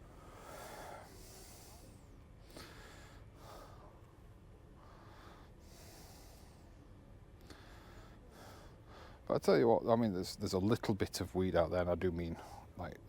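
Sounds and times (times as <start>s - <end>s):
slow breathing: 0.0s - 9.3s.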